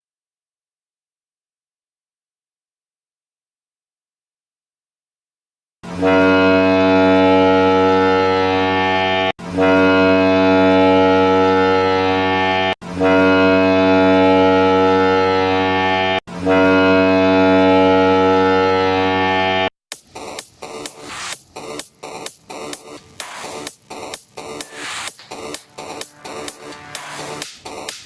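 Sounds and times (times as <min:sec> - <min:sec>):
hockey goal horn blasts: 0:05.9 - 0:19.7.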